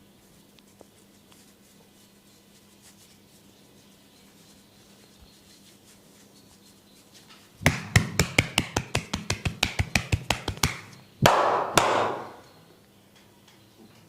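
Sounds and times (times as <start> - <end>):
mallet tapping wooden wedge: 7.6 - 12.4.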